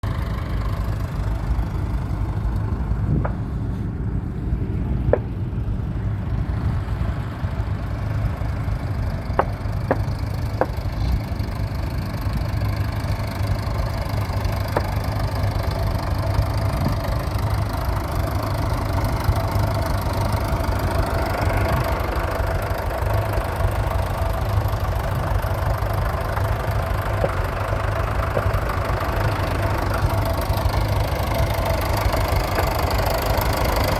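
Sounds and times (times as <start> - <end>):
tractor diesel engine idling: 0.0 - 33.9.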